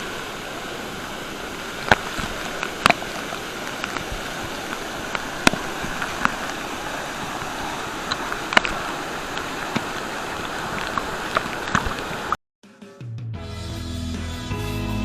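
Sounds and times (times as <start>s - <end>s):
waterfall rushing: 0.0s - 12.4s
sharp splashing ticks: 1.5s - 12.4s.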